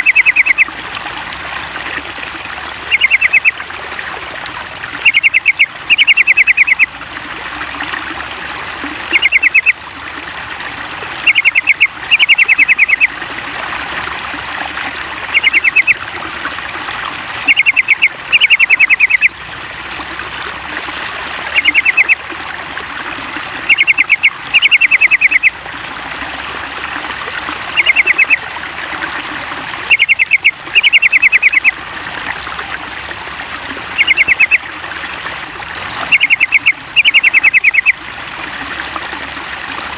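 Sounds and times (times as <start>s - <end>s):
bird chattering song: 0.0s - 0.7s, 2.9s - 3.6s, 5.0s - 6.9s, 9.1s - 9.8s, 11.2s - 13.1s, 15.3s - 16.0s, 17.4s - 19.3s, 21.6s - 22.2s, 23.7s - 25.5s, 27.8s - 28.4s, 29.9s - 31.7s, 34.0s - 34.6s, 36.1s - 38.0s
trickle of running water: 0.0s - 39.9s.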